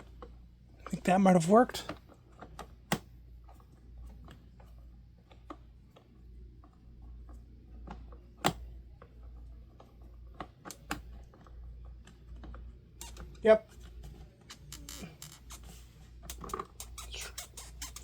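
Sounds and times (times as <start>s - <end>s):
plastic parts clicking: 7.3s - 18.0s.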